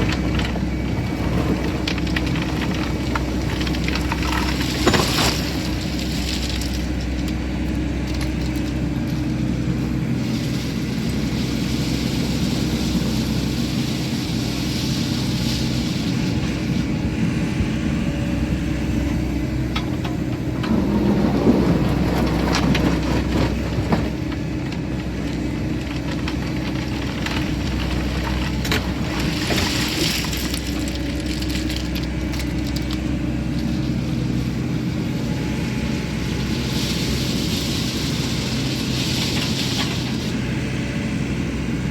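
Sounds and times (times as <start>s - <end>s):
excavator diesel engine running: 0.0s - 41.9s.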